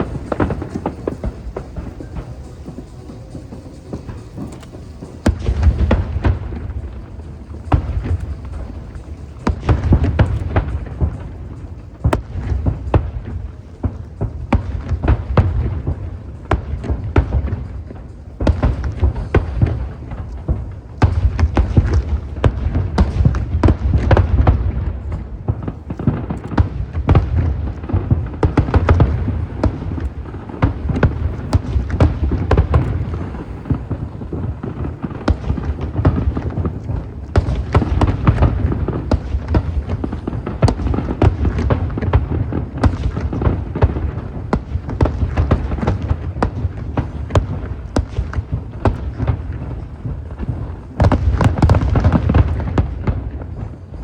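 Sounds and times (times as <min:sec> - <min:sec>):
firework booms: 0:00.0 - 0:54.0
firework cracks: 0:00.0 - 0:54.0.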